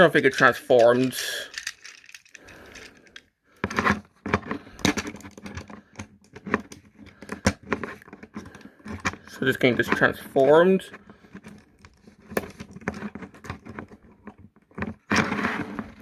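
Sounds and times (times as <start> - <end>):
plastic toy parts clicking: 0.2 - 3.3.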